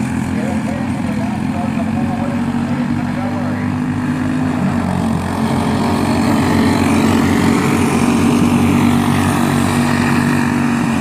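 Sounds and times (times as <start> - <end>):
small racing engines running: 0.0 - 11.0.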